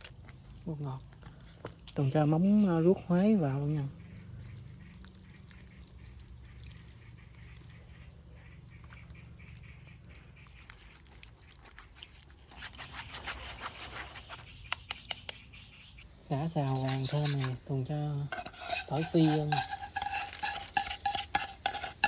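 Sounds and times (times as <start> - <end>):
utensil clicking against pan: 14.7 - 15.4, 18.2 - 22.0
frying sizzle with stirring: 16.1 - 22.0.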